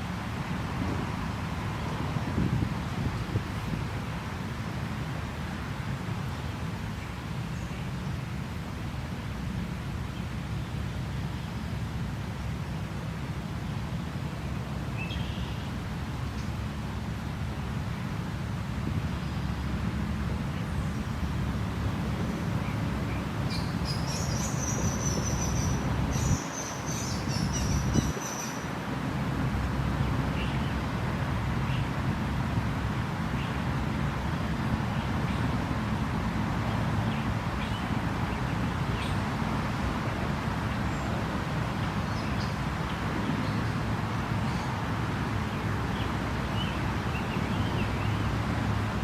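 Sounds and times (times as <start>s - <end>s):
creek water flowing: 0.0s - 49.0s
songbird chirping and trilling: 22.3s - 28.7s.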